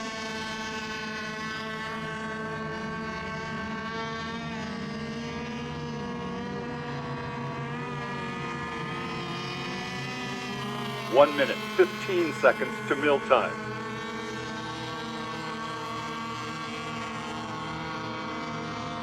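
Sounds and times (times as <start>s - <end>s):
racing boats whining: 11.2s - 13.6s.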